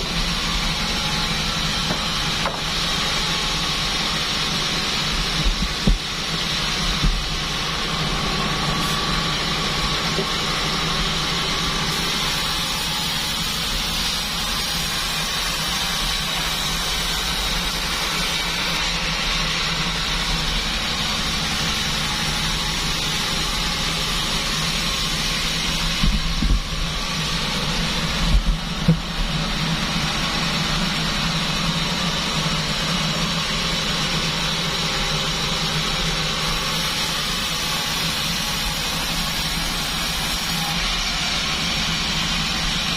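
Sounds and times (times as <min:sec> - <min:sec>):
band sawmill running: 0:00.0 - 0:42.9
loud knocks: 0:01.8 - 0:02.8.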